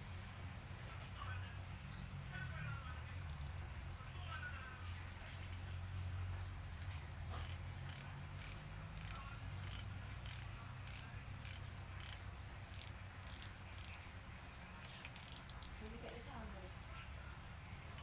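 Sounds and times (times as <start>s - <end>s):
fishing reel ratchet clicking: 3.3s - 4.6s, 5.2s - 5.8s, 6.8s - 14.1s, 15.1s - 16.2s.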